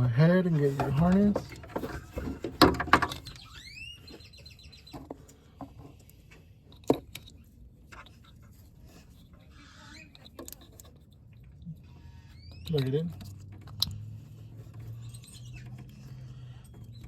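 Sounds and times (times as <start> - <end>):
short rising squeaks: 11.7 - 13.2.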